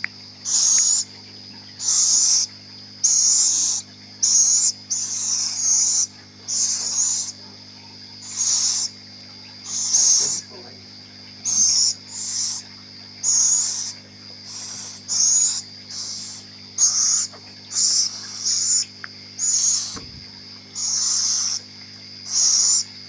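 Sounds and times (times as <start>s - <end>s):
steady low hum: 0.0s - 23.0s
baby owl hissing screeches: 0.4s - 1.1s, 1.8s - 7.4s, 8.2s - 9.0s, 9.7s - 10.4s, 11.4s - 12.6s, 13.2s - 20.1s, 20.8s - 21.6s, 22.2s - 22.9s.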